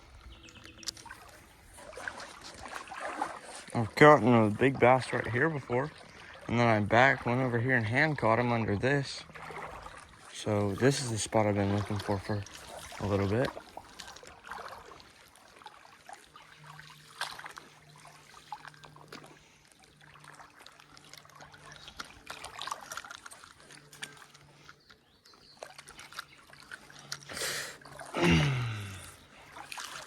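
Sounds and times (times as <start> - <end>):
creek water trickling: 0.0 - 30.0
small clicks and splashes: 0.2 - 28.2, 28.8 - 30.0
sharp splash: 1.0 - 3.8, 29.6 - 30.0.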